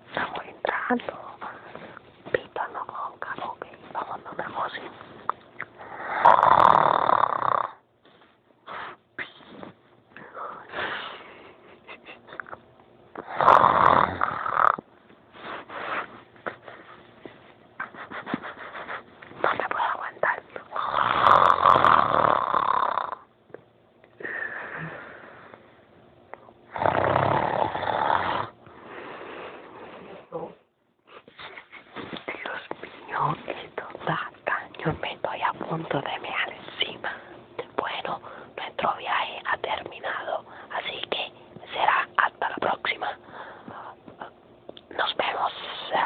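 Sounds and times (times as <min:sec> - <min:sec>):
person snoring: 0:05.8 - 0:07.8, 0:13.2 - 0:14.8, 0:20.8 - 0:23.3, 0:26.7 - 0:30.6.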